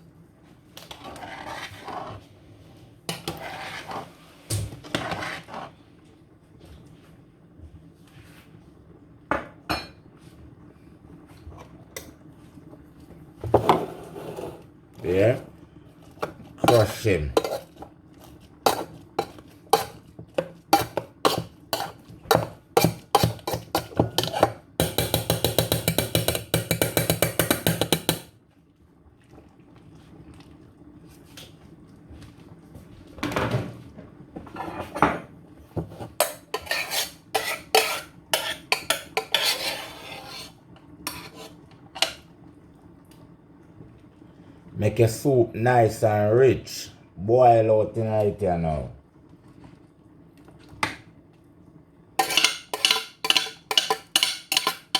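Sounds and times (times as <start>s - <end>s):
utensil knocking in a pot: 18.7s - 28.3s, 52.2s - 54.9s.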